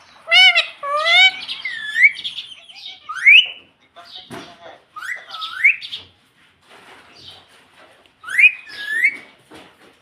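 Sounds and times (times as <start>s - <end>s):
soft scratchy parrot chatter: 0.0s - 9.3s
parrot whistling: 0.2s - 3.6s, 8.2s - 9.2s.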